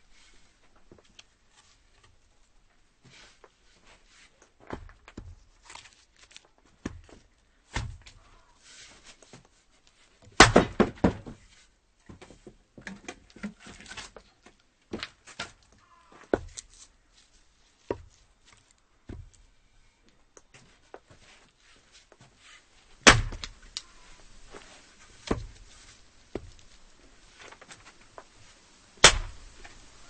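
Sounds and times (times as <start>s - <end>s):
axe chopping wood: 7.7s - 8.1s, 10.4s - 11.3s, 23.0s - 23.7s, 29.0s - 29.5s.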